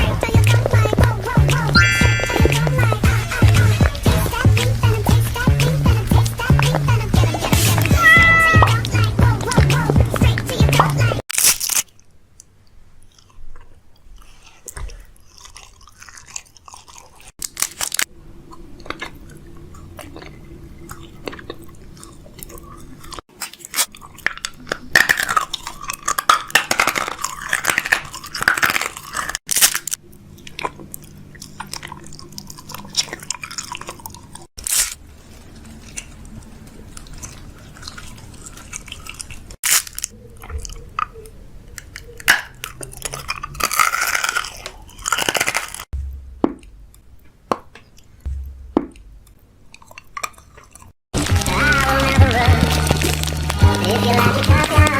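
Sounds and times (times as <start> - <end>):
crunchy chewing: 0.0 - 54.9.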